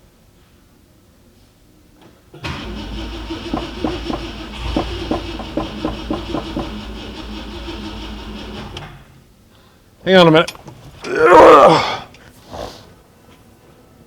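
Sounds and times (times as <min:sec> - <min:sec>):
engine cranking: 0:02.4 - 0:09.2
engine popping and rumbling: 0:02.4 - 0:09.2.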